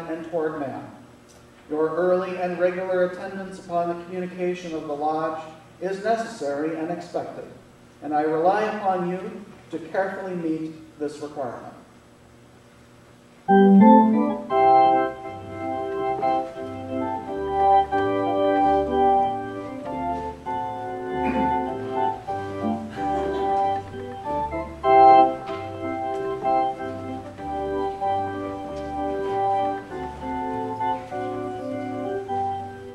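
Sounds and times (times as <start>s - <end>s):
organ playing chords: 13.5s - 32.9s.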